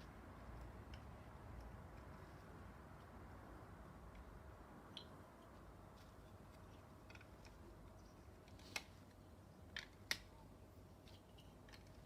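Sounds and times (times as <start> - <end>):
plastic bricks clicking together: 9.6 - 10.3.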